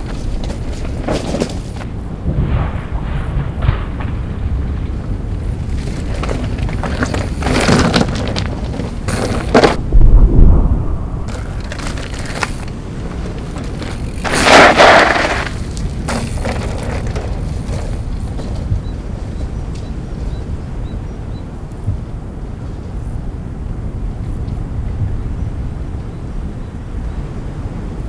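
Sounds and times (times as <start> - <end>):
bike tyres rolling on dirt: 0.0 - 23.1
loud gritty rush: 5.2 - 18.6
heavy thuds: 5.2 - 19.1.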